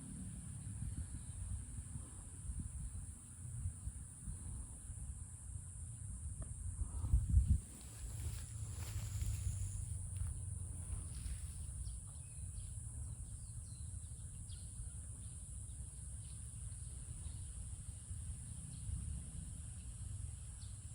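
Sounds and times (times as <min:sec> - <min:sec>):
low rumble: 0:06.8 - 0:12.0.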